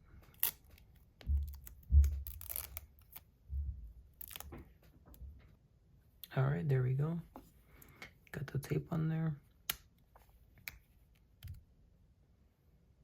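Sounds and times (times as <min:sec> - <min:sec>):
tape being cut: 0:01.4 - 0:03.2.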